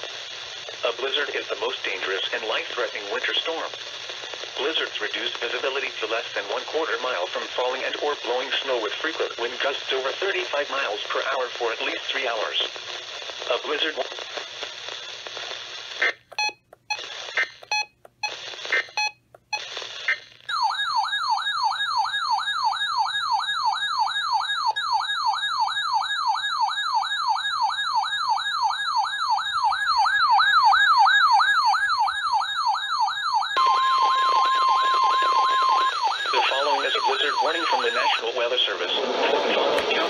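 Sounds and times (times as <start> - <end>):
radio hiss: 0.0 - 16.3, 17.0 - 19.0, 19.6 - 20.5, 34.4 - 40.0
warbling alarm siren: 20.5 - 38.3
steady warning tone: 33.5 - 38.9.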